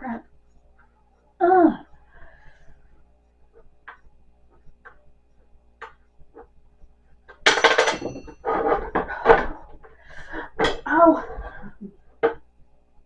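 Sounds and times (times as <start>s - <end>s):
small metal parts clattering: 7.4s - 9.0s.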